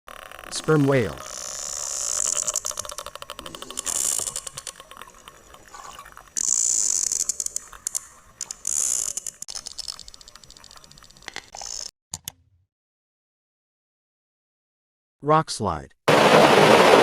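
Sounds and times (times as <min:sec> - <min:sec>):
whale clicking underwater: 0:01.1 - 0:11.5.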